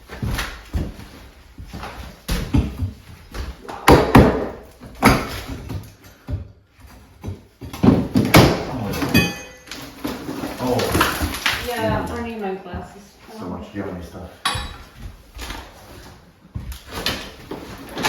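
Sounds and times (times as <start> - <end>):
demolition knocks and bangs: 7.2 - 9.3, 10.0 - 13.0
material scraping: 9.8 - 12.4.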